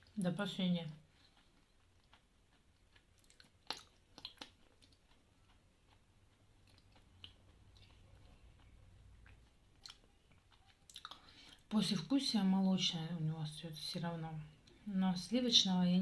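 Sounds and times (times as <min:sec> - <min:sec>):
person chewing chalk: 0:01.0 - 0:11.7.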